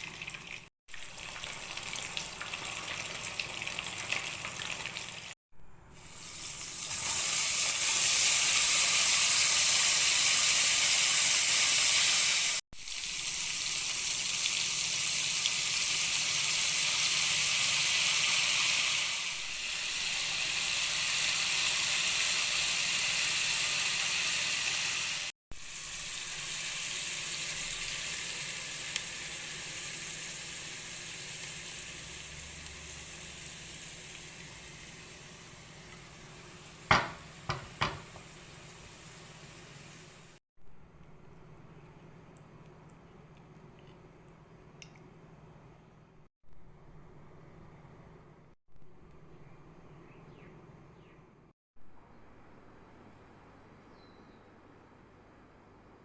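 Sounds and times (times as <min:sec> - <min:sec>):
fish sizzling in hot oil: 0:00.0 - 0:05.4, 0:06.0 - 0:40.4.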